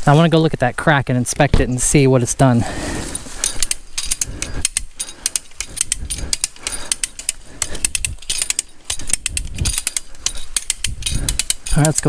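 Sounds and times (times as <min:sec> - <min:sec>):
winch ratchet clicking: 0:03.1 - 0:12.0.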